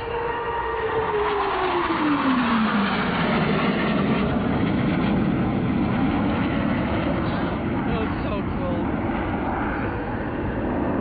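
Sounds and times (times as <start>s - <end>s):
jets passing with roar: 0.0s - 11.0s.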